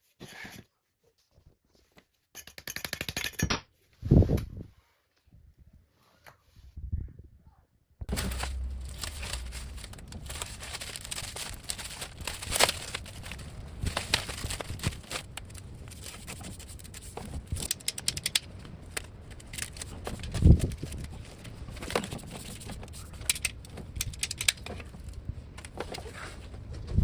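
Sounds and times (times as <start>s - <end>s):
heavy thump: 8.0s - 15.0s
clicks and rattles of plumbing parts: 8.1s - 27.0s.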